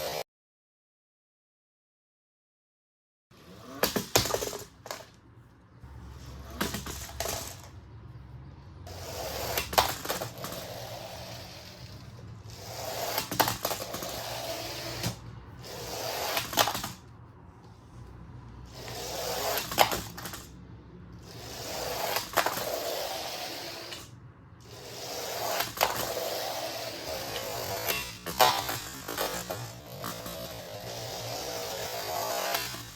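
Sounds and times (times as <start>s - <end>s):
toy motor whirring: 8.8s - 17.1s, 18.7s - 20.5s, 21.1s - 32.9s.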